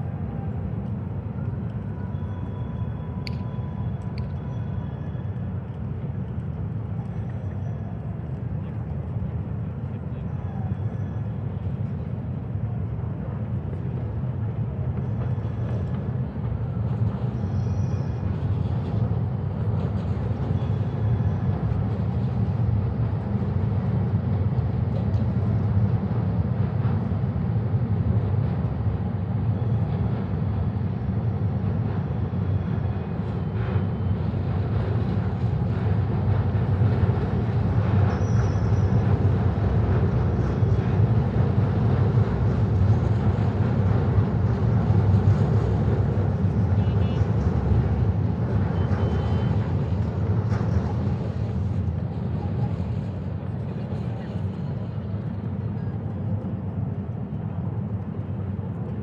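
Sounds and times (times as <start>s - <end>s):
wind: 0.0s - 59.0s
distant traffic: 13.2s - 58.9s.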